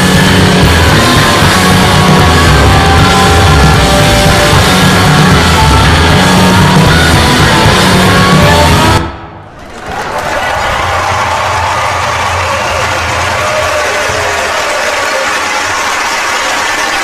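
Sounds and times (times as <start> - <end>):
loud rock music: 0.0 - 9.4.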